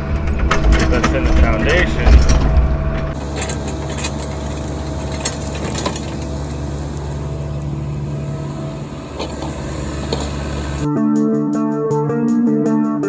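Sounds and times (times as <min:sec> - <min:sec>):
light clanks: 0:00.0 - 0:07.2
excavator diesel engine running: 0:00.0 - 0:10.9.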